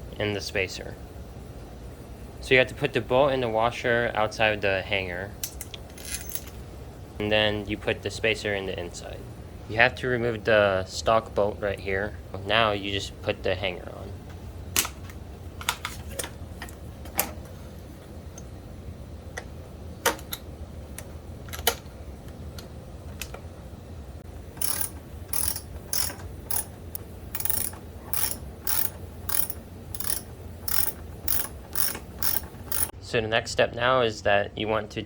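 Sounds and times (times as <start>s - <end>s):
metal parts and tools clinking: 5.4s - 6.6s, 24.6s - 32.9s
ratchet wrench clicking: 24.6s - 32.9s.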